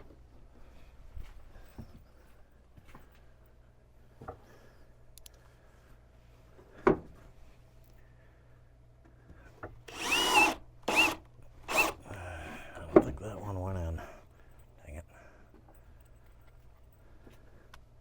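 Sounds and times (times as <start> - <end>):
power drill driving a screw: 9.9 - 12.0.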